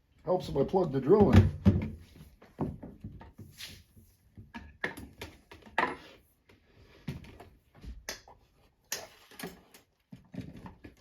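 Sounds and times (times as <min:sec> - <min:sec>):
clicks and knocks of handling tools: 0:07.1 - 0:11.0.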